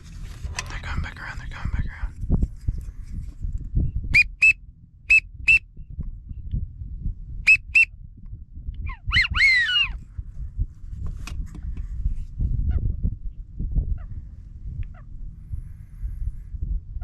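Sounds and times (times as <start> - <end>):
low wind rumble: 0.0 - 17.0
duck call whistle notes: 4.2 - 5.6, 7.5 - 7.9.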